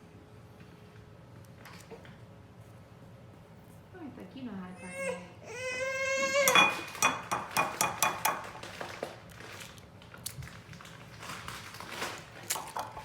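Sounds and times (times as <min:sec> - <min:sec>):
child whining: 0:04.8 - 0:06.7
egg tapped against a bowl: 0:06.5 - 0:08.5.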